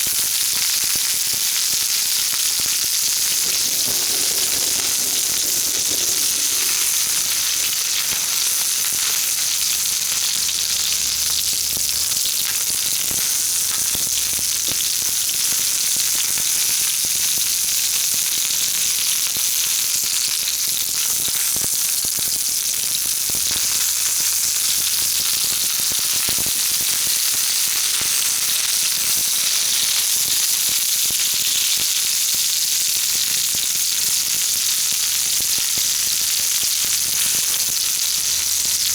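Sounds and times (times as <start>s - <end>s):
mushrooms sizzling in oil: 0.1s - 14.2s
small pops of frying: 3.0s - 10.5s.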